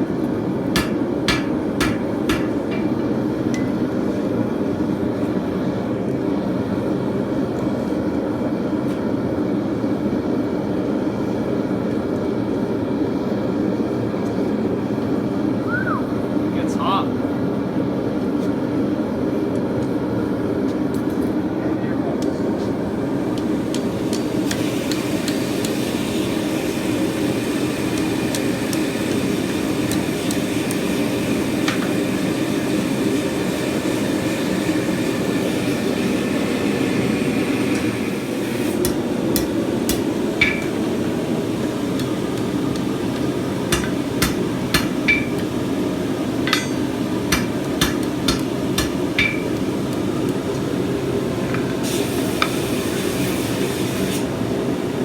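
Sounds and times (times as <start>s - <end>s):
hammer striking steel on anvil: 0.7s - 3.8s, 38.8s - 40.8s, 43.7s - 45.5s, 46.4s - 49.7s.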